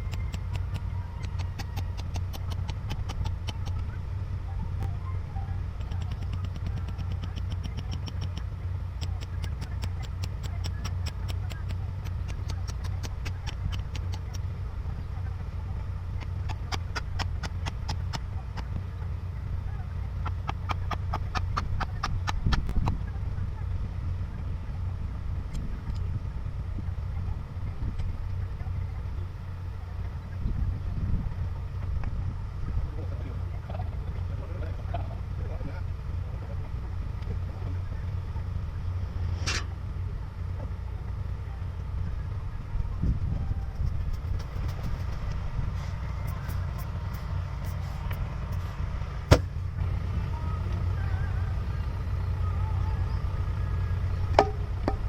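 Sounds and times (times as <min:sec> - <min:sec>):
excavator diesel engine running: 0:00.0 - 0:55.0
sharp knock: 0:49.3 - 0:49.5.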